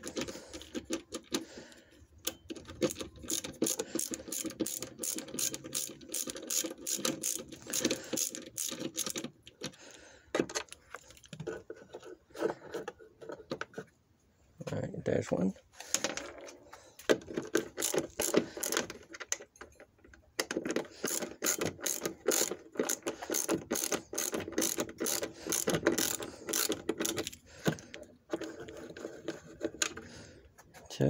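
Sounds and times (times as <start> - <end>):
ratcheting screwdriver clicking: 2.2 - 9.8, 17.5 - 19.0, 20.4 - 27.8.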